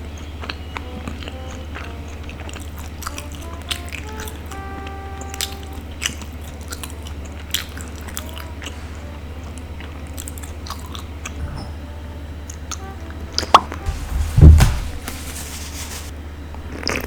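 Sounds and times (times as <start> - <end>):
chewing sticky rice ball: 0.0 - 11.2, 16.6 - 17.0.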